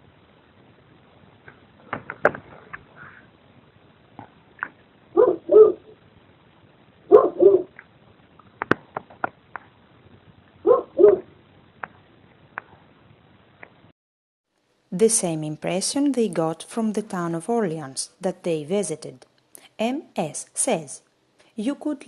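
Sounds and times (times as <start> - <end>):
dog barking: 5.2 - 5.9, 7.1 - 7.7, 10.6 - 11.3.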